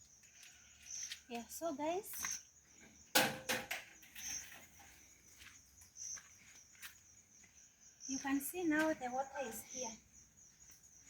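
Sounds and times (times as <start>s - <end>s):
faint high chirp: 4.0s - 5.1s.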